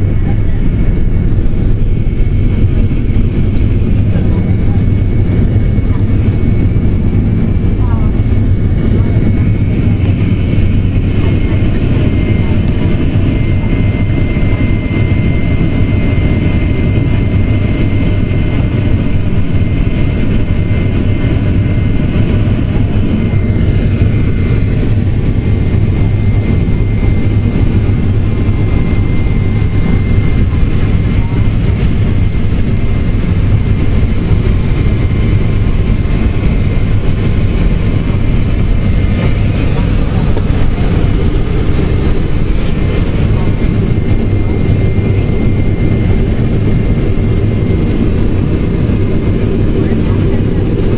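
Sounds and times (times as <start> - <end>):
high whine: 0.0 - 50.9
jet engine deep rumble: 0.0 - 50.9.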